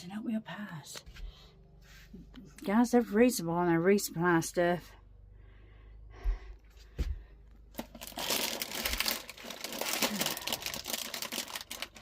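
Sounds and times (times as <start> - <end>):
plastic packaging crinkling: 7.7 - 12.0.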